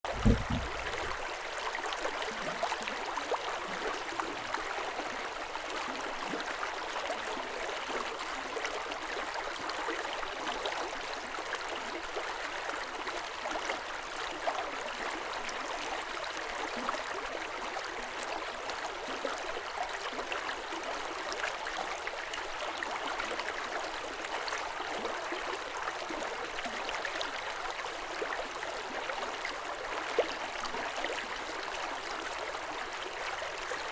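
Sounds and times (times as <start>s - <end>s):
low bump: 0.0s - 1.2s
river water rushing: 0.1s - 1.3s.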